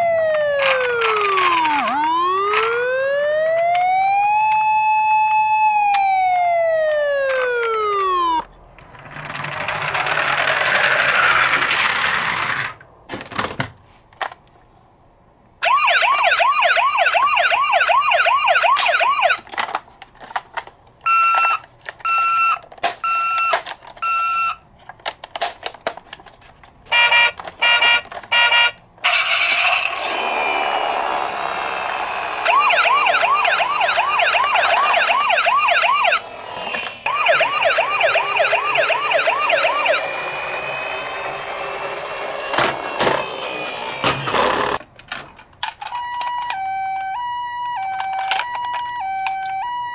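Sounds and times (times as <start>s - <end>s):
emergency vehicle siren: 0.0s - 8.5s, 15.6s - 19.5s, 30.0s - 44.8s, 45.8s - 49.9s.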